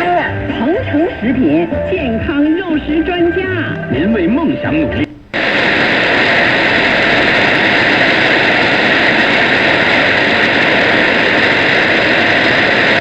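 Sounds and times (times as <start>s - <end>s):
broadcast speech: 0.0s - 5.3s
shortwave radio hiss: 0.0s - 13.0s.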